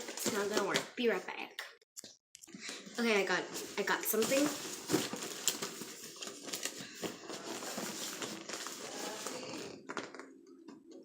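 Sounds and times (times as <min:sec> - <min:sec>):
rustling and crinkling: 0:00.0 - 0:00.9, 0:02.5 - 0:10.4.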